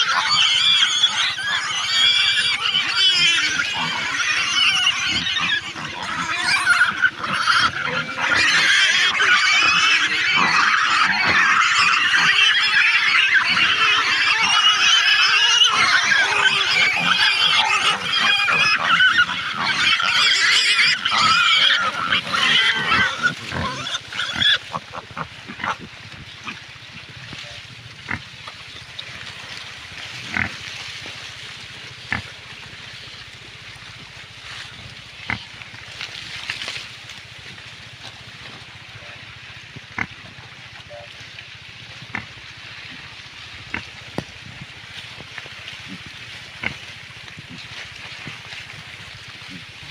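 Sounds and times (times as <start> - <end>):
pigs squealing: 0.0 - 26.7, 29.4 - 31.1, 35.2 - 35.6.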